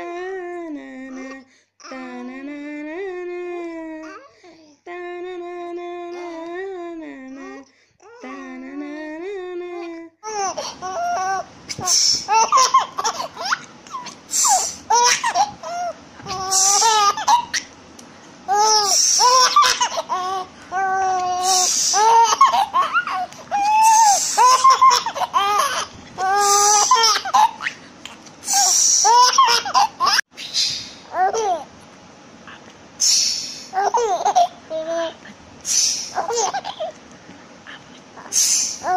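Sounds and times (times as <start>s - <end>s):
baby laughing and squealing: 10.3s - 17.7s, 18.5s - 27.8s, 28.5s - 30.2s, 31.1s - 31.7s, 33.7s - 35.2s, 36.1s - 36.9s.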